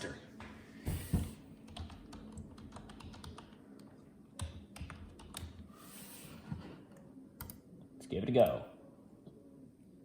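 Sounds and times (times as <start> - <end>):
computer keyboard typing: 1.6 - 5.7.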